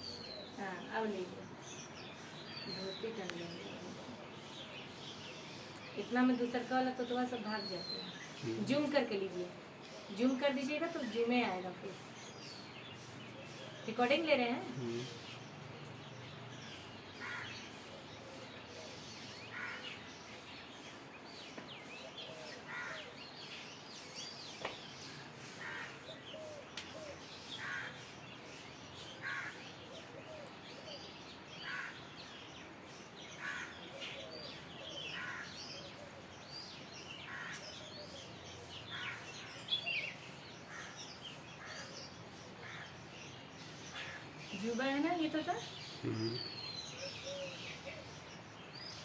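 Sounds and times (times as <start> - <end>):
faint bird chirps: 33.0 - 49.0
bird calling: 37.1 - 49.0.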